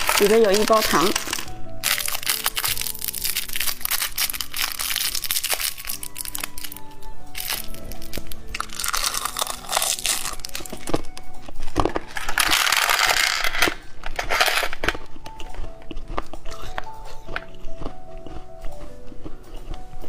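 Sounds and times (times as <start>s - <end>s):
plastic packet crinkling and tearing: 0.0s - 15.3s
background music: 0.0s - 20.0s.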